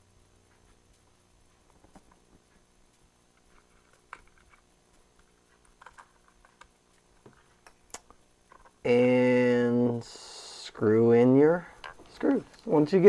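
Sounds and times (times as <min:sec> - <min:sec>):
small parts clicking into place: 0:03.5 - 0:08.8.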